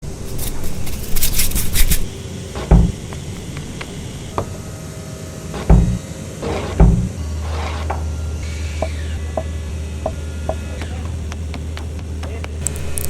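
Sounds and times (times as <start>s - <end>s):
scraping strokes on wood: 0.1s - 4.7s, 5.5s - 13.0s
heavy wooden thumps: 2.6s - 4.6s, 5.6s - 7.2s.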